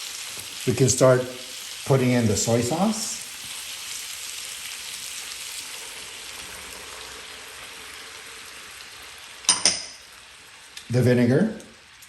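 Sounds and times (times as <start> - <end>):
chicken sizzling in a pan: 0.0 - 12.0.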